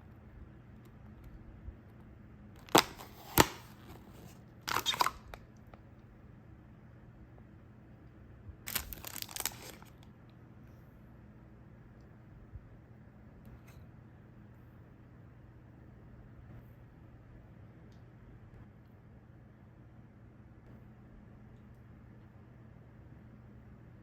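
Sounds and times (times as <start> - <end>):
wrapping crinkling and tearing: 2.6 - 5.4, 8.7 - 10.0.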